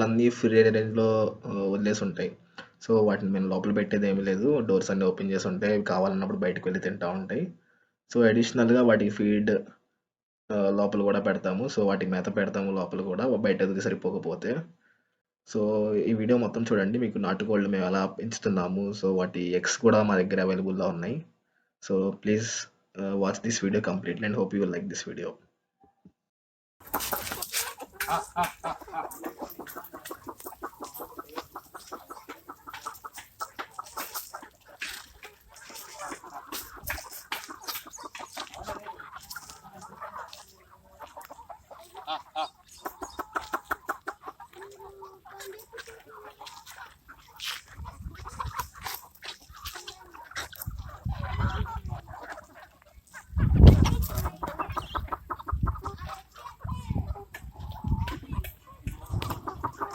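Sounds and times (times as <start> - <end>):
chickens clucking: 0.0 - 7.5, 26.8 - 59.9.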